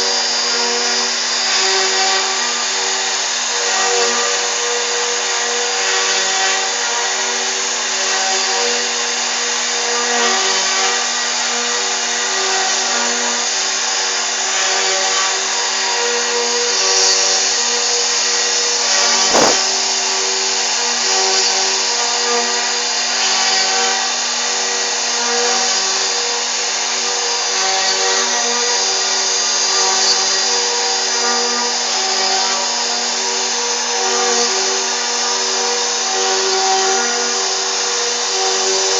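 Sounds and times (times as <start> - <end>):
router spindle whirring: 0.0 - 38.9
hissing cutting noise: 16.6 - 20.6
sharp click: 19.0 - 19.7.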